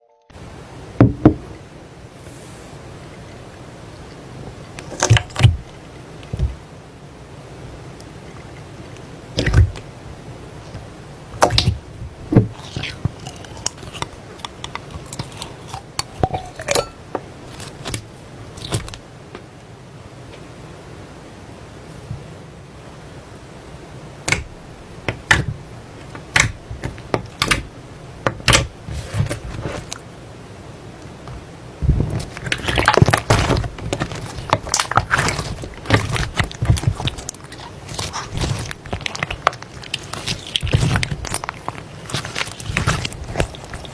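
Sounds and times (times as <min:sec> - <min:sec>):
slime crackling and popping: 0:26.1 - 0:27.7, 0:31.9 - 0:43.9
slime clicking and popping: 0:26.3 - 0:27.7.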